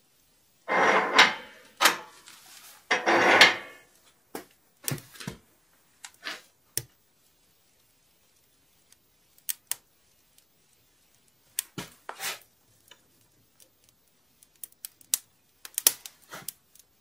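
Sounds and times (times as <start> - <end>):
firewood clattering and scraping: 0.7 - 3.8.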